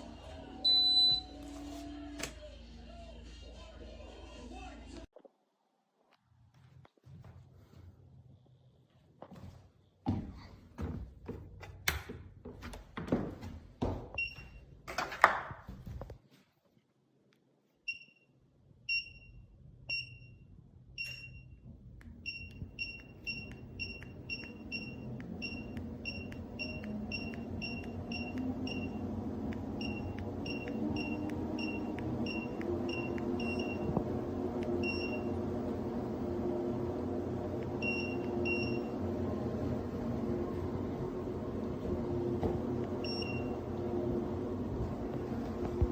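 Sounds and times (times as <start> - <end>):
treadmill console beeping: 0.6 - 1.6, 14.1 - 14.8, 17.9 - 45.9
treadmill motor hum: 21.8 - 45.9.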